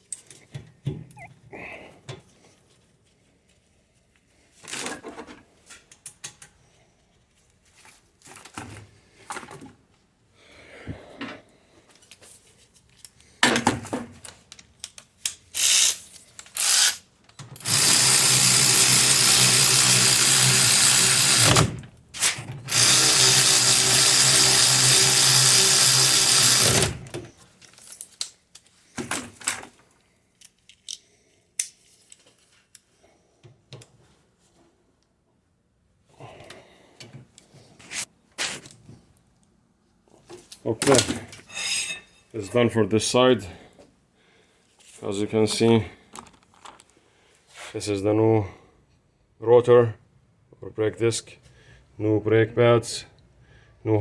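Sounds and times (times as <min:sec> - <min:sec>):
power drill running: 0:15.6 - 0:16.0, 0:16.6 - 0:17.0, 0:17.6 - 0:21.8, 0:22.7 - 0:27.1.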